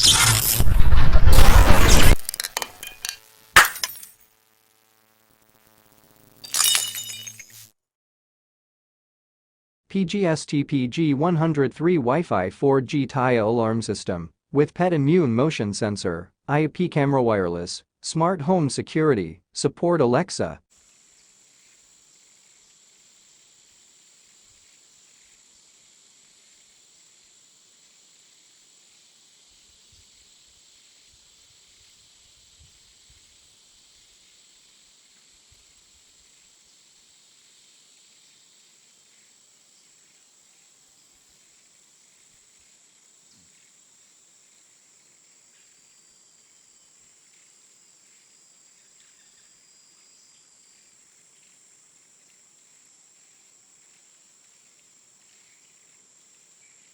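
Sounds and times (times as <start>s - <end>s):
high-pitched hiss: 20.8s - 56.9s.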